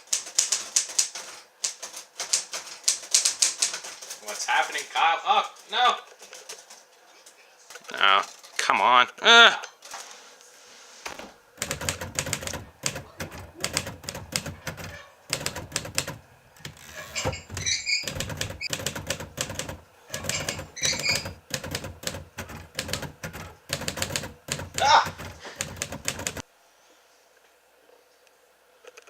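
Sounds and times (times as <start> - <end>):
typewriter keys clicking: 0.0 - 4.8, 11.6 - 26.4.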